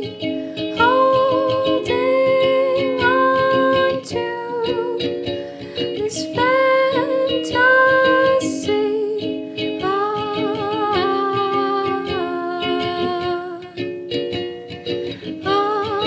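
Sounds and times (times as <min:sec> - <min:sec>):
ukulele plucked: 0:00.0 - 0:16.0
woman singing long notes: 0:00.8 - 0:05.1, 0:06.0 - 0:13.7.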